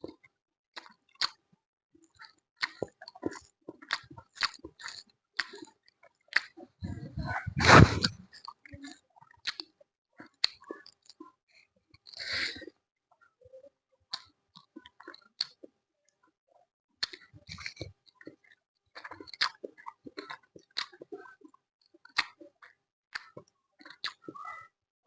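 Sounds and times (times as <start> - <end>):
person chewing with mouth smacks: 0.8 - 1.4, 2.1 - 11.2, 14.1 - 15.8, 17.0 - 24.6.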